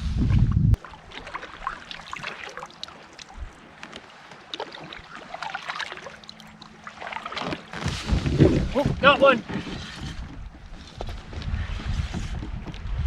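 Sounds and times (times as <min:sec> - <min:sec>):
water lapping against kayak hull: 0:00.0 - 0:13.0
water drips: 0:00.7 - 0:07.6.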